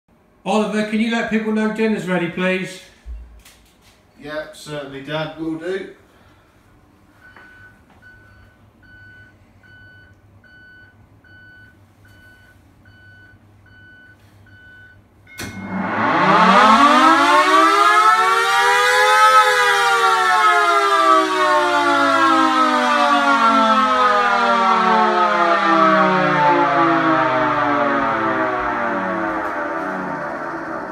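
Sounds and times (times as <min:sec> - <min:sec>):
air raid siren winding: 0:15.3 - 0:30.9.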